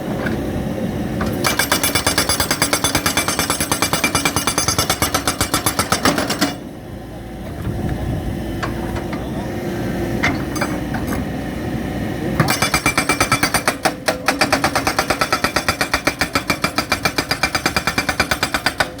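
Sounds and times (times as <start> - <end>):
excavator engine running: 0.0 - 19.0
hydraulic rock breaker hammering: 1.2 - 6.6, 12.4 - 19.0.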